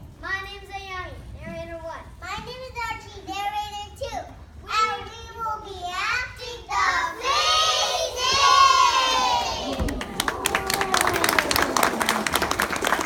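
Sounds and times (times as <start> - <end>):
children shouting together: 6.4 - 11.8
audience clapping: 9.4 - 13.0.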